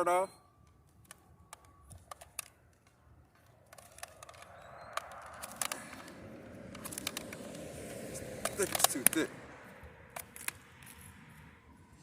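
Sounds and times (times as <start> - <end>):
handling rustle: 0.5 - 9.3
cutting tool clicking and scraping: 0.7 - 9.3.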